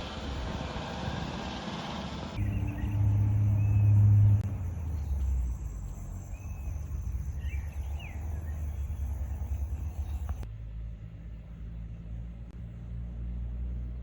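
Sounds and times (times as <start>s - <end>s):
low engine drone: 0.0s - 14.0s
birds chirping: 2.4s - 10.4s.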